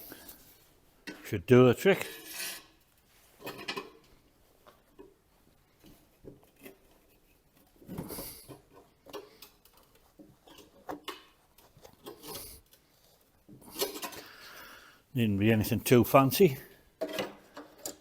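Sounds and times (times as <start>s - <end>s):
metal scraping: 2.0s - 2.8s.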